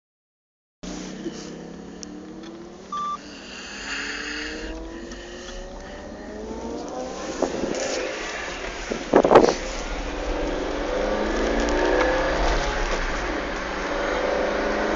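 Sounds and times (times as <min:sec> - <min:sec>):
car engine accelerating: 0:00.8 - 0:14.9
road noise inside car: 0:00.8 - 0:14.9
short electronic beep: 0:02.9 - 0:03.2.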